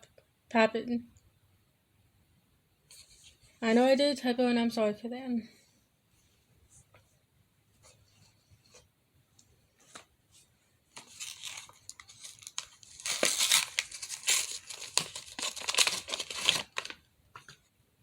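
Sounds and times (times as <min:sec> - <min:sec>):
plastic packaging tearing: 0:11.0 - 0:17.0.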